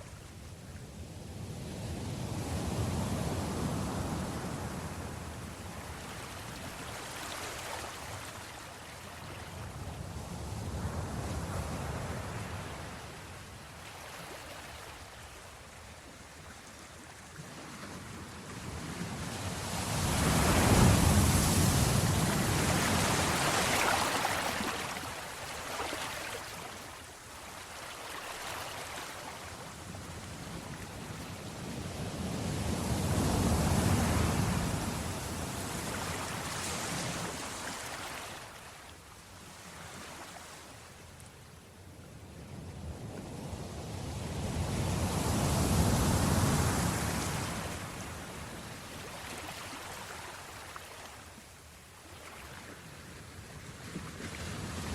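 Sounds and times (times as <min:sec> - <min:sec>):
waves breaking on shore: 0:02.1 - 0:41.2, 0:43.2 - 0:54.9
wind rumbling on microphone: 0:17.5 - 0:24.8, 0:29.6 - 0:37.5.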